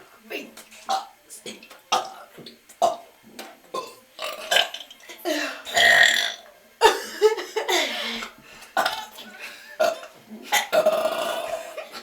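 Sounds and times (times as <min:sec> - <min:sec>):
girls burping: 0:03.8 - 0:12.0.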